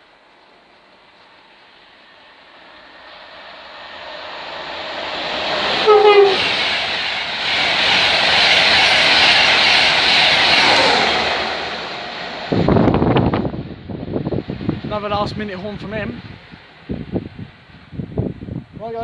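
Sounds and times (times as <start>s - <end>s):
train passing at speed: 0.0s - 19.0s
train horn blast: 5.8s - 6.6s.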